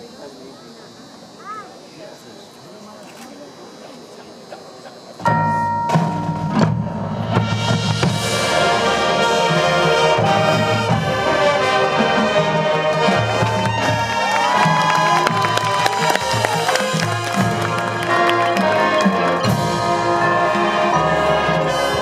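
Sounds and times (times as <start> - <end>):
brass chords: 5.3 - 22.0.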